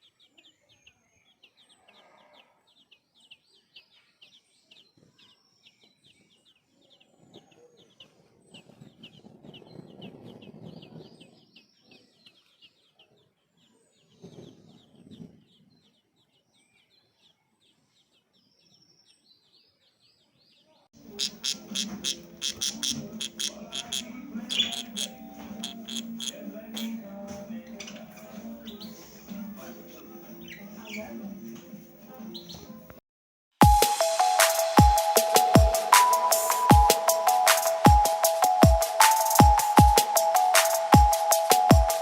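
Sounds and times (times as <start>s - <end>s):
small birds chirping: 0.0s - 33.0s
lower louder bird calls: 21.0s - 27.0s
loud music with a beat: 21.1s - 26.4s, 33.6s - 42.0s.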